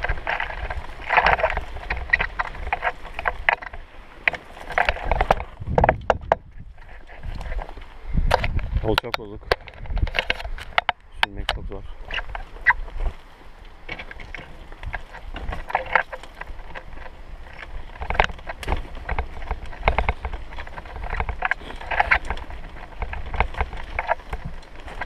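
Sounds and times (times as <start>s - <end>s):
vehicle knocks and rattles: 0.0s - 6.6s.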